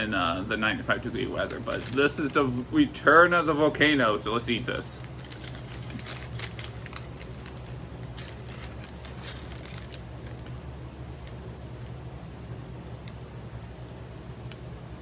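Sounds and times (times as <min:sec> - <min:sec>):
taco shell crunching: 0:01.5 - 0:02.4, 0:04.4 - 0:12.0.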